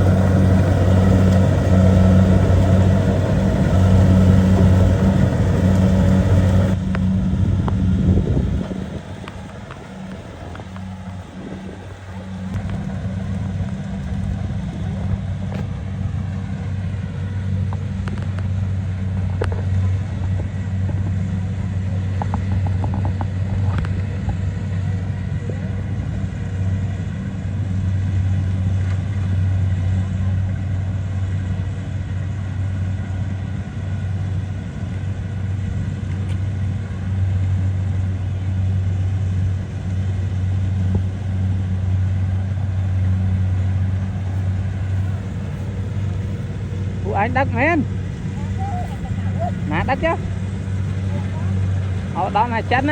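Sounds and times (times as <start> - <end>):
diesel engine humming: 0.0 - 52.9.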